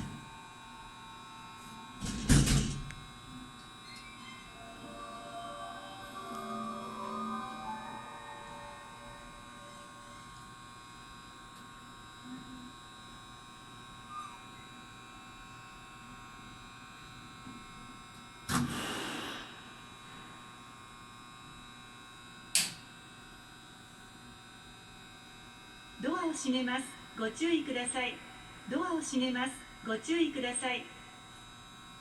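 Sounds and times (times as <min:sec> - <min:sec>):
electrical hum: 0:00.0 - 0:32.0
hissing noise burst: 0:18.6 - 0:19.8.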